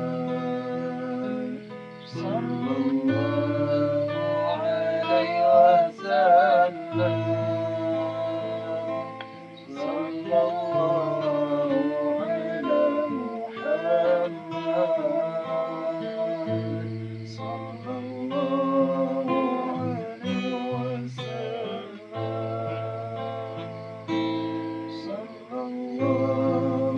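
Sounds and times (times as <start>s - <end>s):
acoustic guitar strummed: 0.0s - 26.9s
person singing with vibrato: 0.0s - 26.9s.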